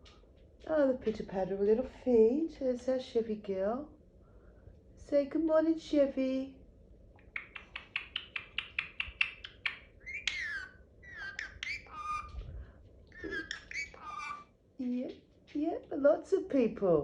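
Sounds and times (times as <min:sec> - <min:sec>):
parrot chirping: 0:07.2 - 0:12.4, 0:13.1 - 0:14.5
parrot whistles and squawks: 0:07.3 - 0:12.4, 0:13.1 - 0:14.5.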